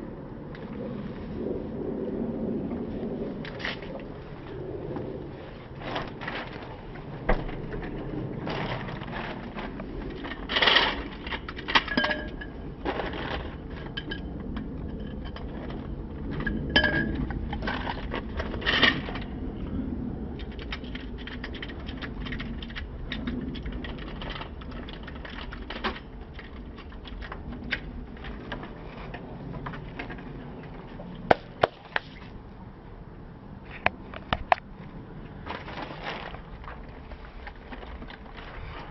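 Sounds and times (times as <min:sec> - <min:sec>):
metal tools clinking: 0:10.4 - 0:14.3, 0:16.4 - 0:17.8.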